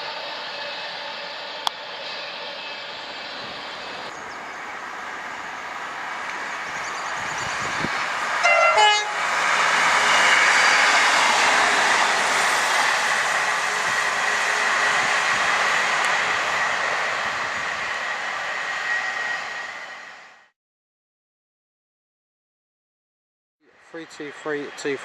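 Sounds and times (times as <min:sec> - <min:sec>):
train rushing past: 0:00.0 - 0:20.5, 0:23.8 - 0:25.0
two-tone train horn: 0:08.4 - 0:09.4.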